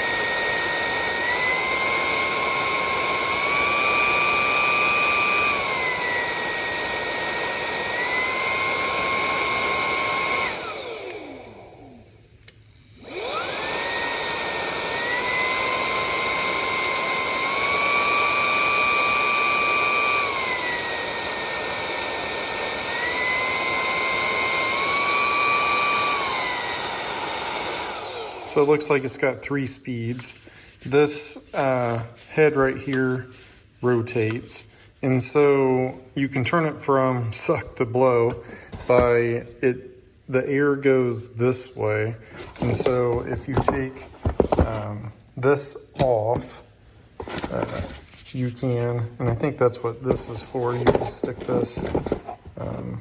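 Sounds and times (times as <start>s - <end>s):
vacuum motor whining: 0.0s - 29.3s.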